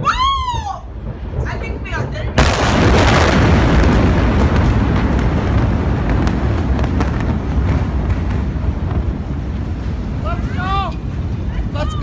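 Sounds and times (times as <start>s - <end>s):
explosion rumble: 0.0s - 12.0s.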